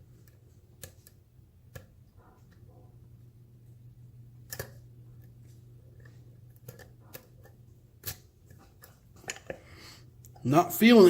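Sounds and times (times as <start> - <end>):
lock pick clicking and scraping: 6.0 - 9.6.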